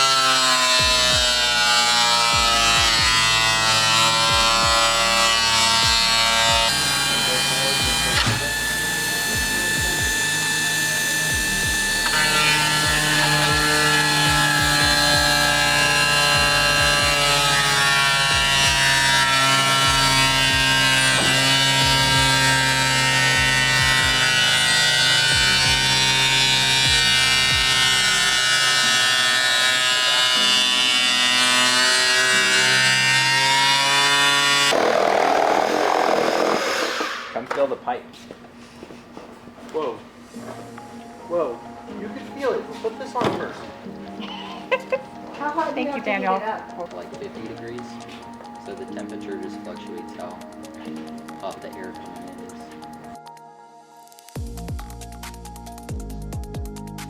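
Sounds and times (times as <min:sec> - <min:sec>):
music of sustained chords: 0:00.0 - 0:34.7, 0:40.2 - 0:57.0
electronic music: 0:04.2 - 0:17.7
thudding kick drum beat: 0:54.4 - 0:55.2, 0:55.9 - 0:57.0.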